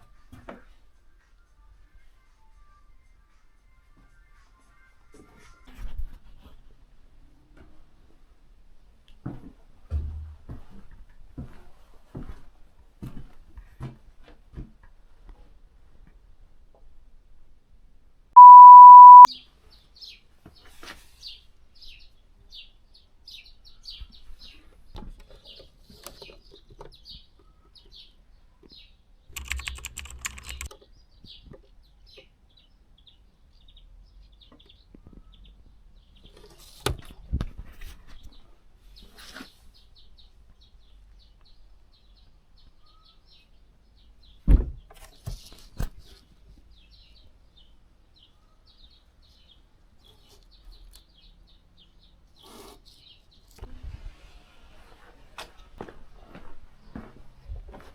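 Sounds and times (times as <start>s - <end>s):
loud steady beep: 18.4s - 19.3s
faint bird chirps: 18.4s - 19.4s, 42.7s - 43.4s.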